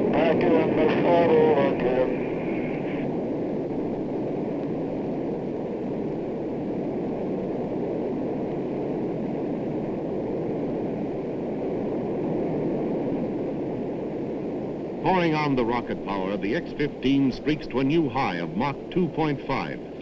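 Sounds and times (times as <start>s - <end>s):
aircraft engines running: 0.0s - 4.7s, 15.0s - 20.0s.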